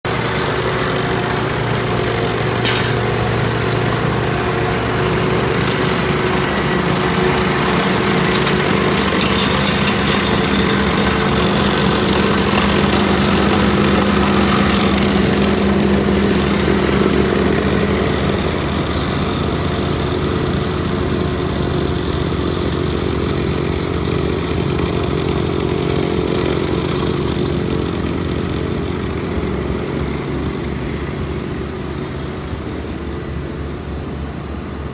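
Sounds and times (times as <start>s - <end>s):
heavy machinery engine running: 0.1s - 34.9s
sharp metal clanks: 2.6s - 3.8s, 4.4s - 14.9s.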